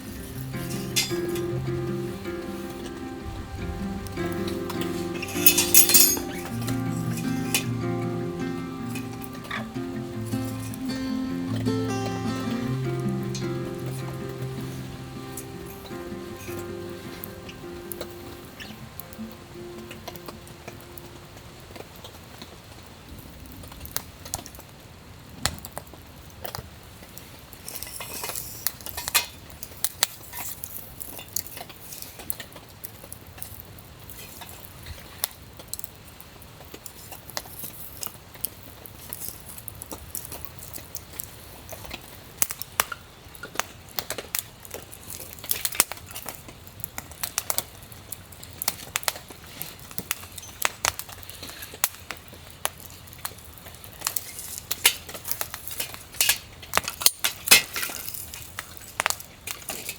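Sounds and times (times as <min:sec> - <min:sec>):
metal utensils clinking: 0:00.0 - 0:02.6, 0:04.4 - 0:17.4.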